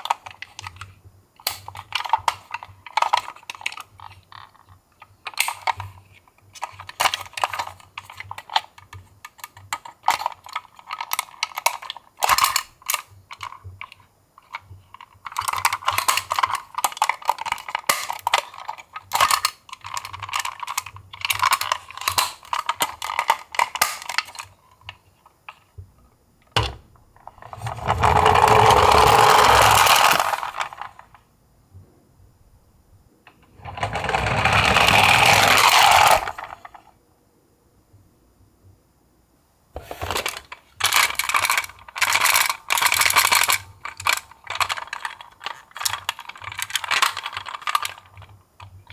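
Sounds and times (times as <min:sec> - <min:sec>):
toy cars clattering and clicking: 0:00.0 - 0:25.7, 0:26.6 - 0:31.2, 0:33.3 - 0:36.9, 0:39.8 - 0:48.9
toy car rolling whir: 0:01.4 - 0:04.7, 0:26.6 - 0:31.2, 0:33.3 - 0:36.9, 0:39.8 - 0:48.9.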